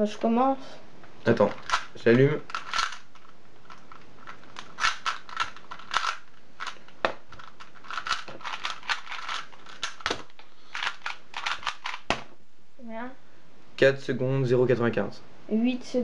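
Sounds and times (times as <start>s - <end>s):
puzzle cube clicking turns: 1.3s - 12.3s.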